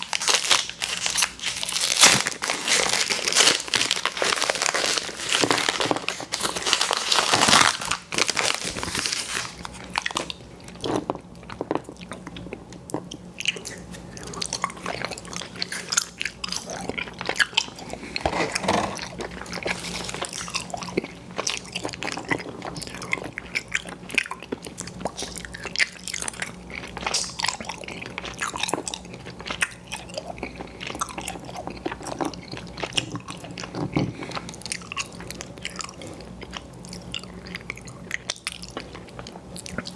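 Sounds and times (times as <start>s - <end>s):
biting crackly candy: 0.0s - 39.9s
open-mouthed chewing with smacks: 9.7s - 39.9s.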